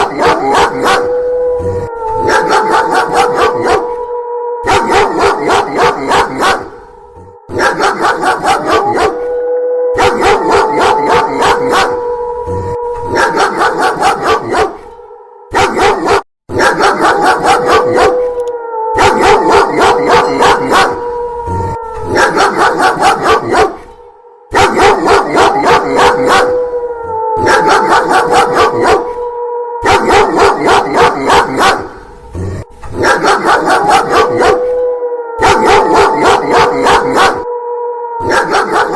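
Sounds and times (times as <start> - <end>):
dog barking fast: 0.0 - 1.1, 2.2 - 3.8, 4.6 - 6.7, 7.5 - 9.2, 10.0 - 11.9, 13.1 - 14.8, 15.6 - 18.2, 19.0 - 21.0, 22.1 - 23.8, 24.5 - 26.5, 27.4 - 29.0, 29.9 - 32.0, 33.0 - 34.6, 35.4 - 37.4, 38.2 - 38.9
wolf howl: 0.0 - 38.9.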